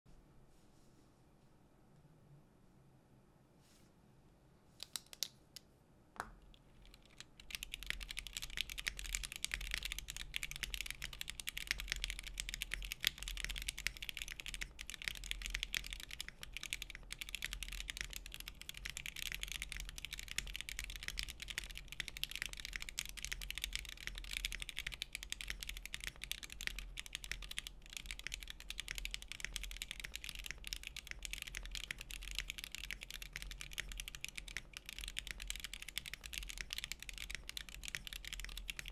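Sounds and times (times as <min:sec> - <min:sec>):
mechanical keyboard typing: 0:06.6 - 0:38.9.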